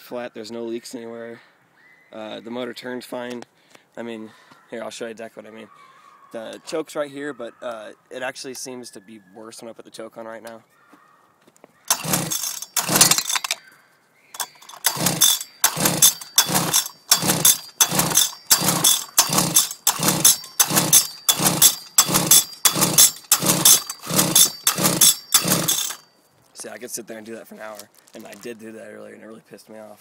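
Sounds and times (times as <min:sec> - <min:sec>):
engine cranking without firing: 0:11.9 - 0:13.6, 0:14.4 - 0:26.1.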